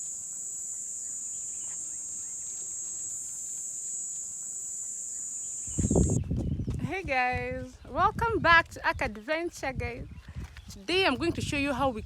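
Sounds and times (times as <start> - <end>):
insect chorus trilling: 0.0 - 6.2
faint bird chirps: 0.0 - 6.7.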